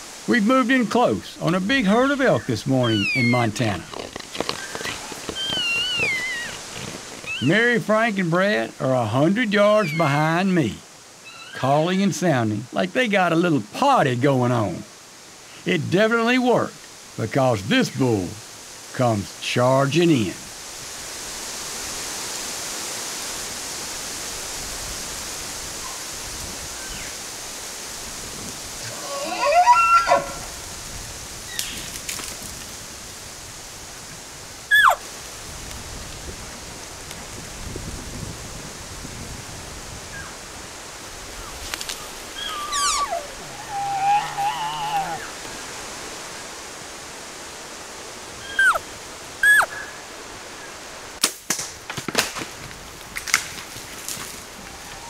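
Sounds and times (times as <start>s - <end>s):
steady rushing hiss: 0.0s - 55.0s
elk bugling whistle: 2.8s - 3.5s, 5.4s - 6.6s, 7.3s - 7.6s, 9.7s - 10.2s, 29.2s - 30.5s, 34.7s - 35.0s, 42.4s - 45.3s, 48.4s - 48.8s, 49.4s - 49.8s
elk mew call: 2.8s - 3.8s, 4.8s - 7.6s, 9.6s - 10.2s, 11.3s - 11.7s, 28.8s - 30.5s, 34.7s - 35.0s, 42.4s - 45.4s, 48.4s - 49.8s
sharp snaps and knocks: 51.2s - 54.4s.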